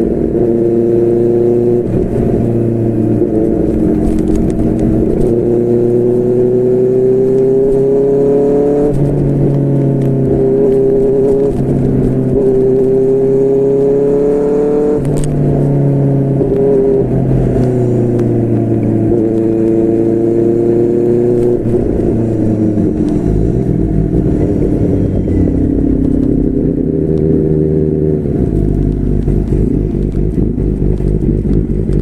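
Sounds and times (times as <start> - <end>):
motorcycle engine accelerating: 0.0 - 32.0.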